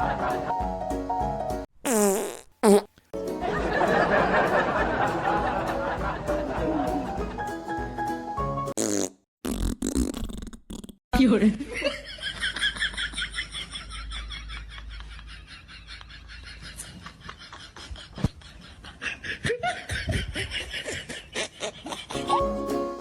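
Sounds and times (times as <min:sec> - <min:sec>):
music: 0:00.0 - 0:01.6, 0:03.2 - 0:08.8, 0:22.2 - 0:23.0.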